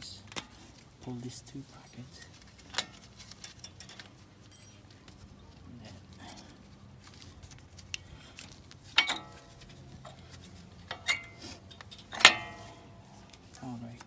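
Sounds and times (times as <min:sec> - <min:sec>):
metallic clinks with ringing: 0:01.8 - 0:05.0, 0:08.9 - 0:13.4.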